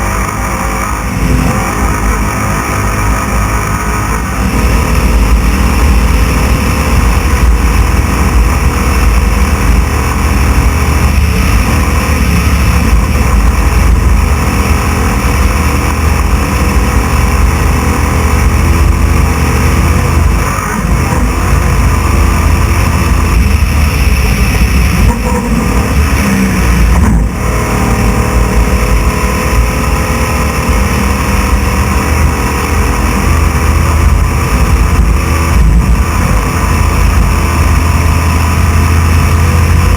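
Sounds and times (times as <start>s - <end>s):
truck engine running hard: 0.0s - 39.9s.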